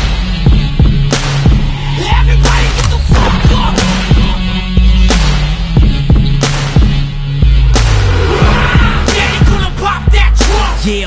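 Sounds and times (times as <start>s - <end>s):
loud music with heavy bass: 0.0s - 11.0s
deep bass thumps: 3.1s - 10.8s.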